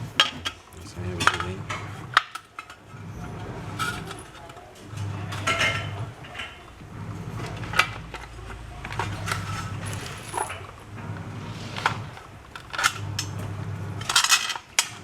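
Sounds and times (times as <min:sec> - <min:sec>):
metal parts clinking: 0:00.4 - 0:01.5, 0:03.8 - 0:04.6, 0:09.0 - 0:10.7, 0:12.6 - 0:13.1, 0:14.0 - 0:15.0.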